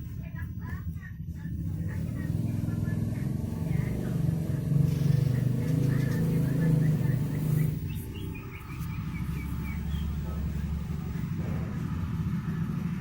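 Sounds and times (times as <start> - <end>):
low droning hum: 0.0 - 13.0.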